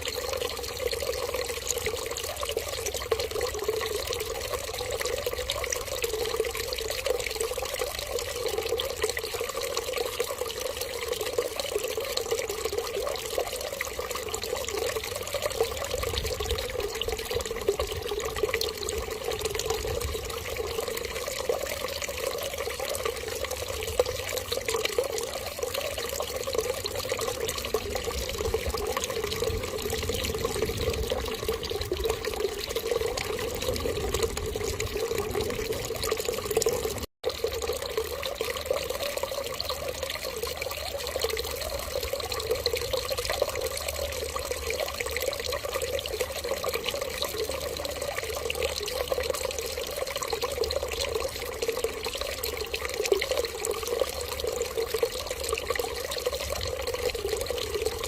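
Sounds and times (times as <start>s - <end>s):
running water flowing: 0.0s - 58.0s.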